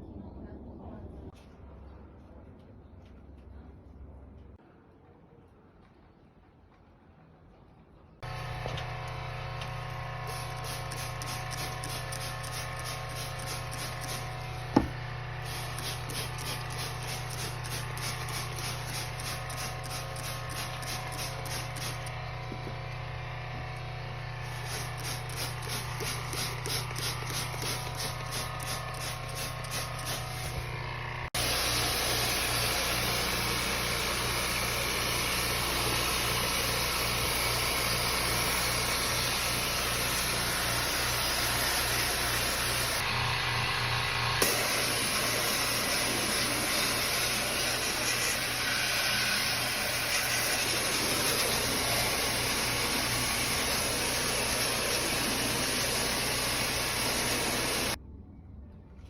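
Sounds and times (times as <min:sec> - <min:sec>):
machine humming and pulsing: 0:08.2 - 0:59.0.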